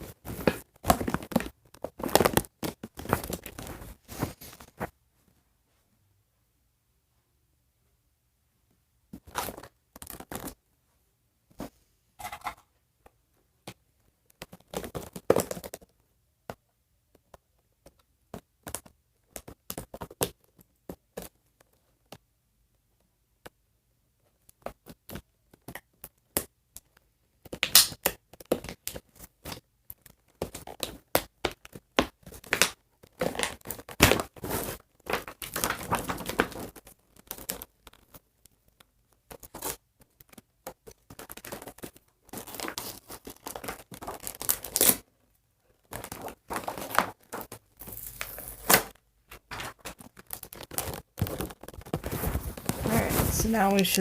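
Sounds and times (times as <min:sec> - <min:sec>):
small clicks and scrapes: 0:28.3 - 0:45.0, 0:49.3 - 0:53.2
plastic wrap tearing and crinkling: 0:32.2 - 0:38.2, 0:39.3 - 0:45.1, 0:45.7 - 0:53.3.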